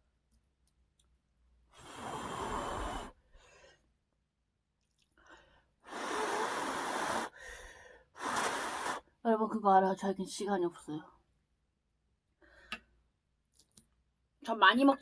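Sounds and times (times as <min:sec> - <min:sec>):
person breathing loudly: 0:01.8 - 0:03.8, 0:05.3 - 0:09.0.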